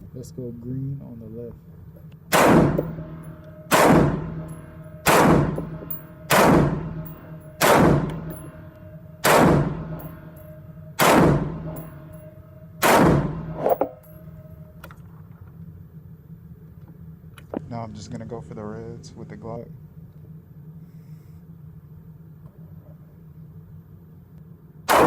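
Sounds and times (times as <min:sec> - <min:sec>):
rifle shots with ringing echo: 0:02.3 - 0:14.1.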